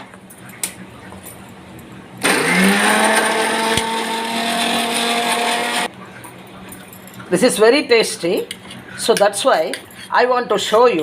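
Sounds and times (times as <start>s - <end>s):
mixer grinder motor humming: 2.2s - 5.9s.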